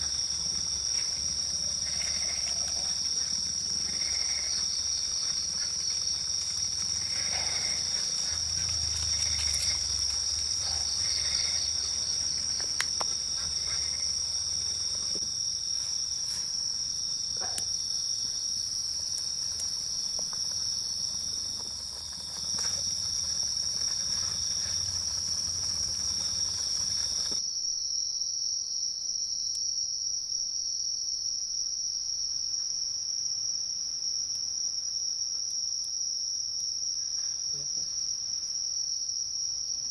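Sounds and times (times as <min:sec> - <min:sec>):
high-pitched insect chorus: 0:00.0 - 0:29.9.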